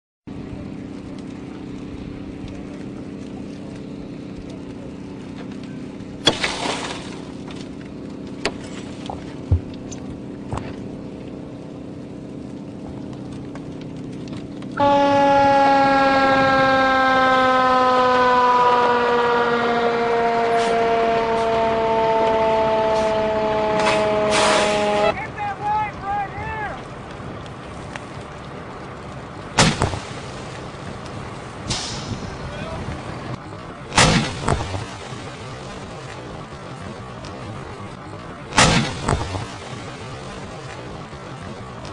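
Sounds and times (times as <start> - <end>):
low engine hum: 0.3 - 41.9
sharp bang: 23.8 - 25.1, 33.9 - 35.0, 38.6 - 39.7.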